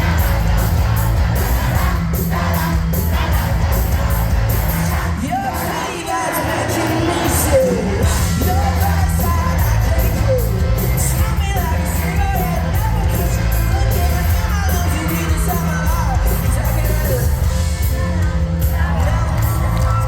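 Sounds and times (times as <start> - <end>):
crowd yelling: 0.0 - 20.0
live pop-rock band playing: 0.0 - 20.0
person singing: 4.7 - 20.0.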